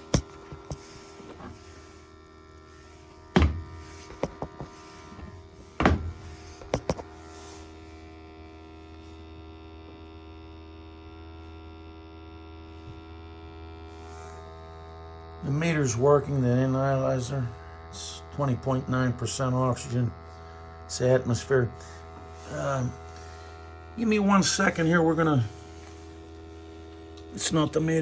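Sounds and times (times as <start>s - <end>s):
steady electrical hum: 0.0s - 28.0s
sharp knocks: 3.4s - 3.6s.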